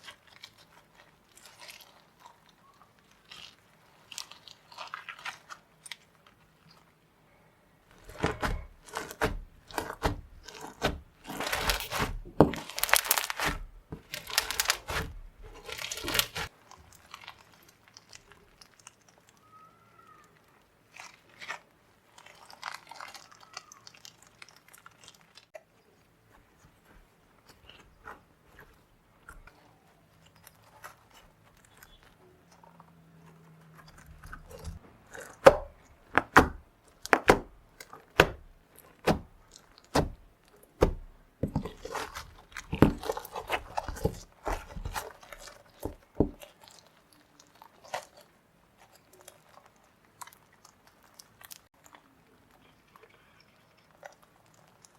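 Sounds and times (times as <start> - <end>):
slime crackling and popping: 0.0 - 6.9, 7.9 - 54.9.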